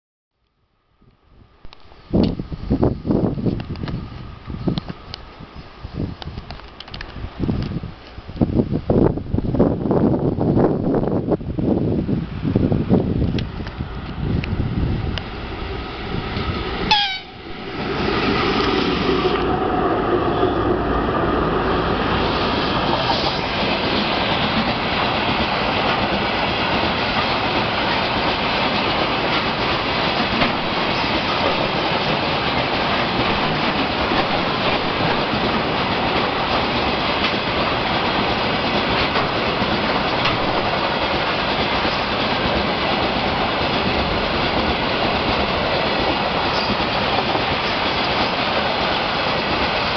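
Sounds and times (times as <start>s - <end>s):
locomotive whine: 12.0s - 28.2s.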